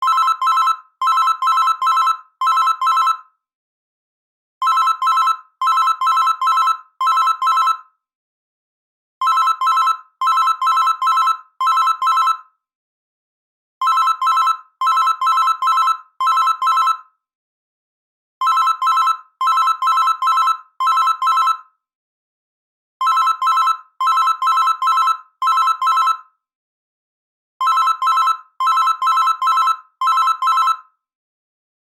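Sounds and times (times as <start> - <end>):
morse code ringtone beeps: 0.0 - 3.2, 4.6 - 7.8, 9.2 - 12.4, 13.8 - 17.0, 18.4 - 21.7, 23.0 - 26.3, 27.6 - 30.9.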